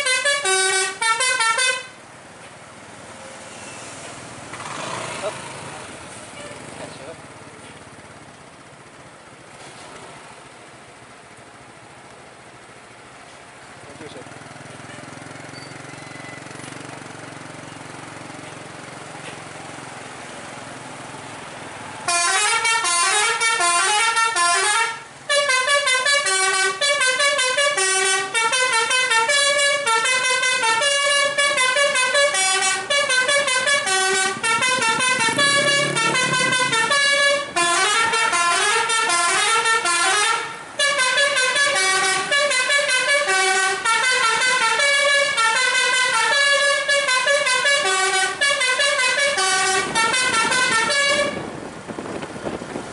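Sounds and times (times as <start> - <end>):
musical bus horn melody: 0.0 - 2.0, 22.0 - 51.7
low vehicle rumble: 1.9 - 52.9.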